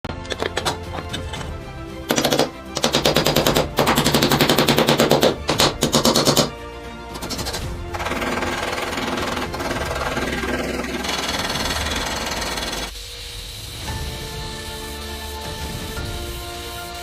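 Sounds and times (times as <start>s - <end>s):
background music: 0.0s - 17.0s
power tool whirring: 7.2s - 13.0s.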